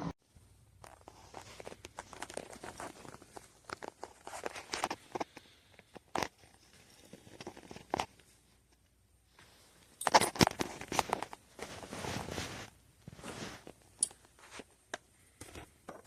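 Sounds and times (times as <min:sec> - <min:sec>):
rustling of objects handled: 0:00.3 - 0:16.0
clicks and knocks of objects: 0:00.8 - 0:08.9, 0:10.0 - 0:11.8, 0:14.0 - 0:16.0.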